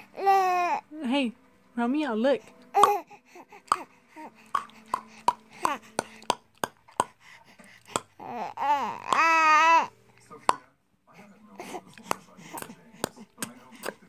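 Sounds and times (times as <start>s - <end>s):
mouth clicks: 4.5s - 5.4s.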